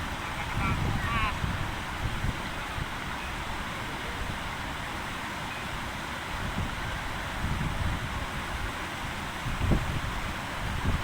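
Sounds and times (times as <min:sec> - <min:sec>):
wind buffeting microphone: 0:00.0 - 0:03.1, 0:06.4 - 0:08.7, 0:09.4 - 0:11.0
steady outdoor hiss: 0:00.0 - 0:11.0.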